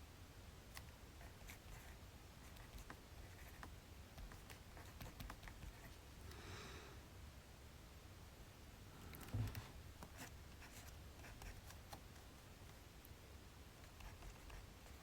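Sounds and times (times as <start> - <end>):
pen scratching on paper: 1.2 - 6.0, 10.0 - 12.2, 13.8 - 15.0
pen tapping and clicking on paper: 2.5 - 5.8, 13.8 - 15.0.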